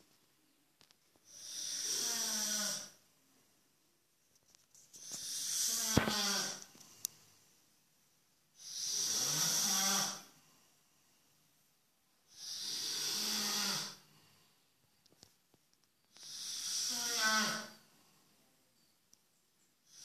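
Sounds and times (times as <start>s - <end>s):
person snoring: 1.3s - 3.0s, 5.1s - 6.7s, 8.6s - 10.4s, 12.3s - 14.1s, 16.2s - 17.8s.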